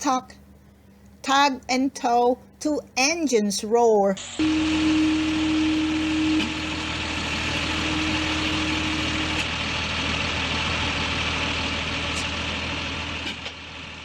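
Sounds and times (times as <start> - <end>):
steady hum: 0.0 - 14.0
vehicle engines running: 4.4 - 14.0.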